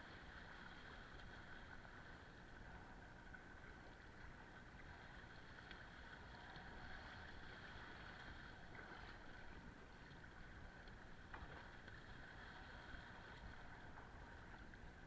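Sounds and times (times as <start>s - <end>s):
wind and water noise: 0.0s - 15.0s
light ticks: 5.6s - 5.9s.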